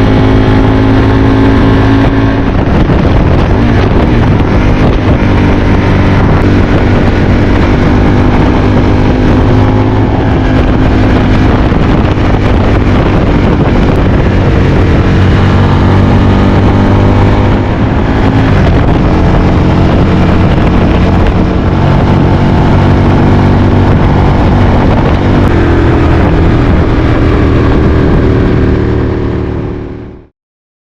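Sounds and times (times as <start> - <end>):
motorcycle engine running: 0.0 - 30.3
wind rushing over microphone: 0.0 - 30.3.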